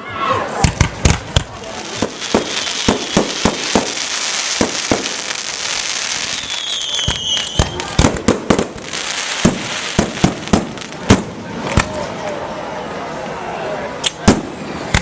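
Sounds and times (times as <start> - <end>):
fireworks crackling: 0.4 - 12.6, 14.0 - 15.0
fireworks bangs: 0.5 - 12.3, 14.1 - 15.0
firework whistle: 2.3 - 8.0.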